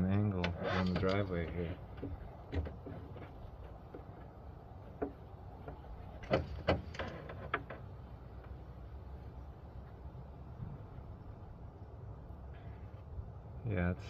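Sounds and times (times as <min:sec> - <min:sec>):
light clicks and knocks: 0:00.4 - 0:08.6.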